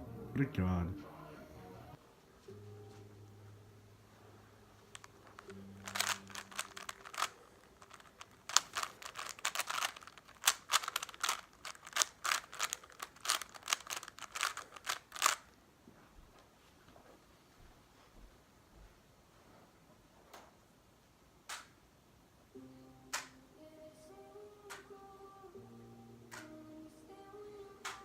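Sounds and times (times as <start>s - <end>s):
plastic puzzle cube clacking: 4.9s - 15.6s.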